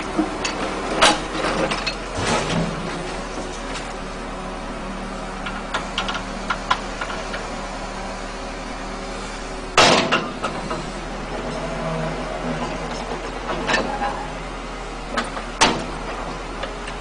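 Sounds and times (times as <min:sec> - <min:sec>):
heavy diesel machinery running: 0:00.0 - 0:17.0
loud metallic clank: 0:09.8 - 0:10.8.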